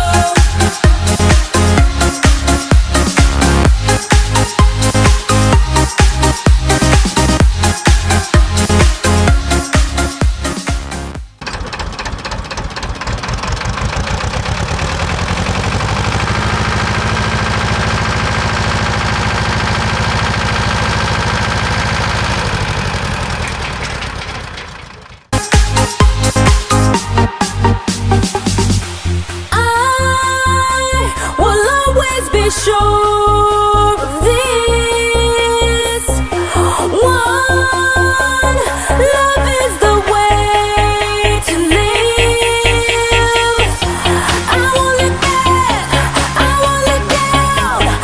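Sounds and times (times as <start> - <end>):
tractor diesel engine running: 0.0 - 10.6, 11.2 - 48.0
electronic dance music: 42.4 - 48.0.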